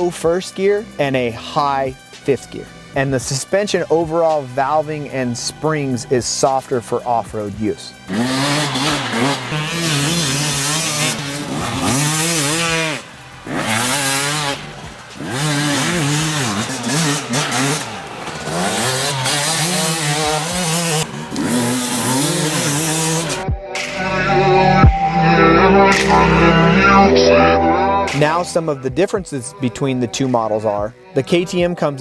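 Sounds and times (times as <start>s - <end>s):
dirt bike engine revving: 2.3s - 23.4s, 28.1s - 28.6s.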